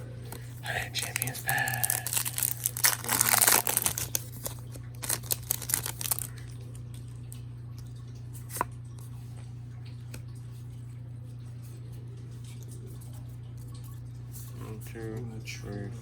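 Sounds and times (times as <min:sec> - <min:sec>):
steady low hum: 0:00.0 - 0:16.0
cards rustling and clicking: 0:00.3 - 0:06.3
wrapper tearing open: 0:01.0 - 0:06.4.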